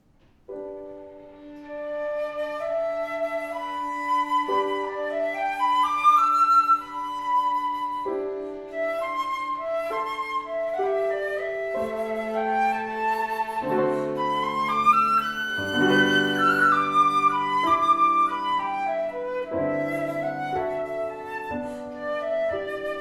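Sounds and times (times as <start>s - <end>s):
instrumental trio music: 0.1s - 23.0s.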